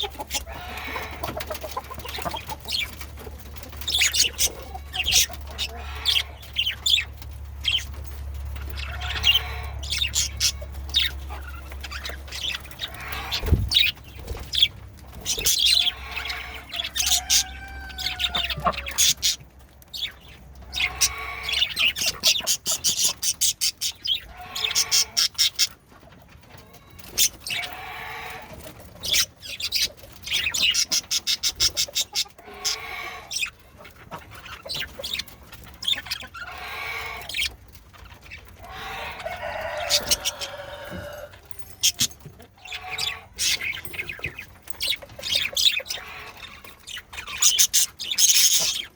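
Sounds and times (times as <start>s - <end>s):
budgerigars chattering: 3.6s - 8.0s, 8.7s - 19.4s, 20.0s - 25.8s, 29.0s - 37.6s, 41.8s - 48.9s.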